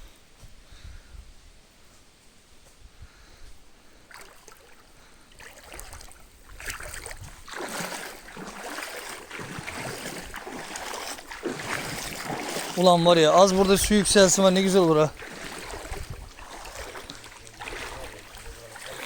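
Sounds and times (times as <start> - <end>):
water splashing from wading: 4.0 - 19.0.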